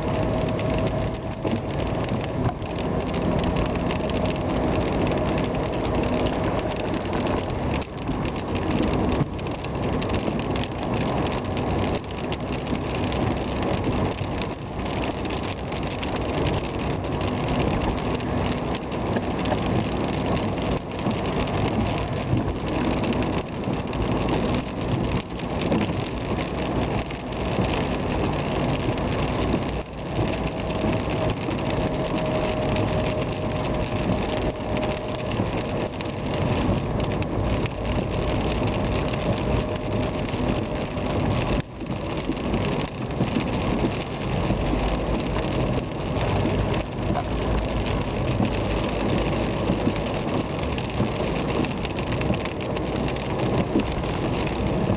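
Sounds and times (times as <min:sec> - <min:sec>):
car engine and road noise: 0:00.0 - 0:54.9
rain hitting car: 0:00.0 - 0:54.9.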